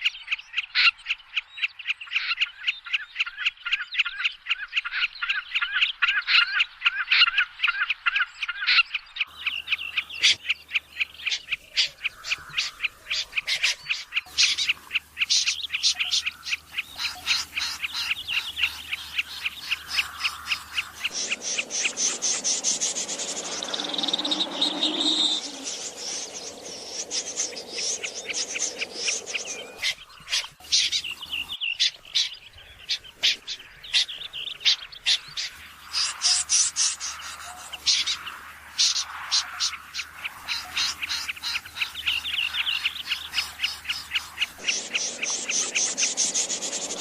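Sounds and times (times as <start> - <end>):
birds chirping: 0.0 - 47.0
hissing wash of bird calls: 9.3 - 31.6, 32.7 - 47.0.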